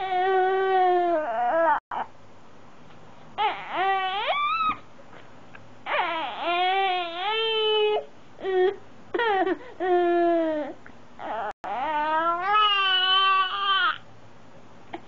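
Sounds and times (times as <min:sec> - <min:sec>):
baby crying: 0:00.0 - 0:02.1, 0:03.4 - 0:04.8, 0:05.9 - 0:14.0.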